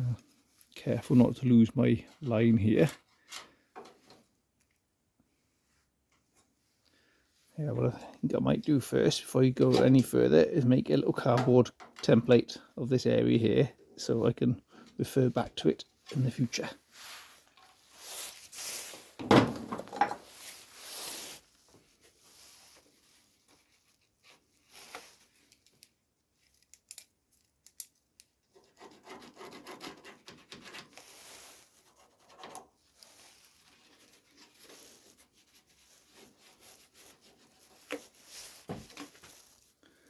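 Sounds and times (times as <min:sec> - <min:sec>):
cardboard rustling and scraping: 0:32.7 - 0:39.8.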